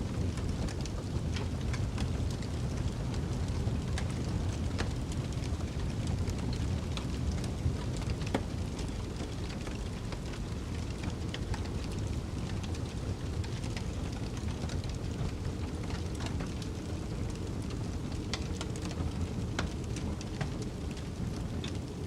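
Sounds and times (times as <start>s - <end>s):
wood fire crackling: 0.0s - 22.0s
fire pops and snaps: 0.1s - 22.0s.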